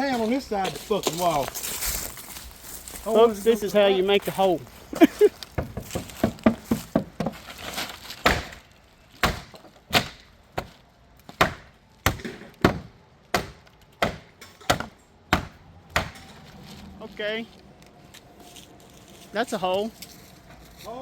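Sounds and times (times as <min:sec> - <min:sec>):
wood cracking: 0:04.9 - 0:17.9
heavy blows on wooden wall: 0:05.5 - 0:07.4.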